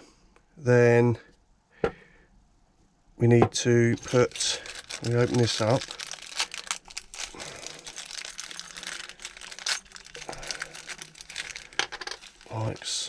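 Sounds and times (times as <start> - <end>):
packaging crinkling and rustling: 4.0 - 13.0.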